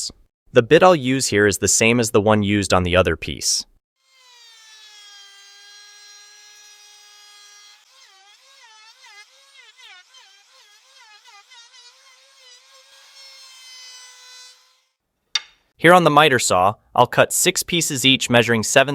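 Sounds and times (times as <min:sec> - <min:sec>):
electric drill whining through wood: 0:04.0 - 0:15.0.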